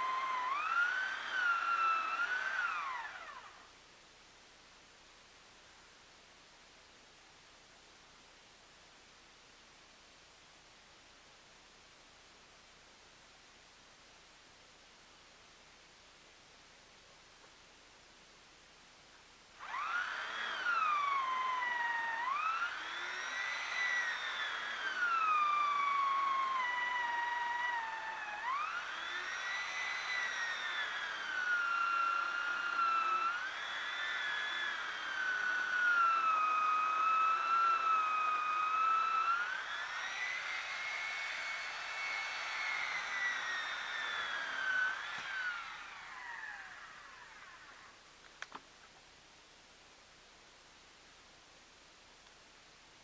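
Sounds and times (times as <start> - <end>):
chainsaw cutting log: 0.0 - 3.6, 19.6 - 47.8.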